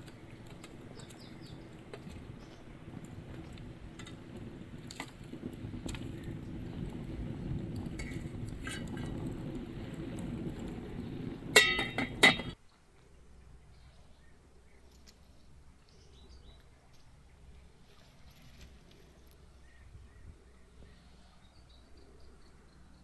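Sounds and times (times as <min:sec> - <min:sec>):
kitchenware clinking: 0:11.6 - 0:12.6.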